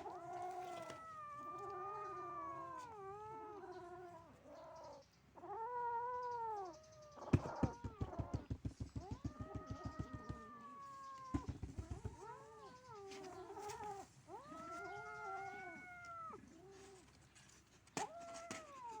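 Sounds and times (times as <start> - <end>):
kitten yowling: 0.0 - 4.0, 9.0 - 16.9.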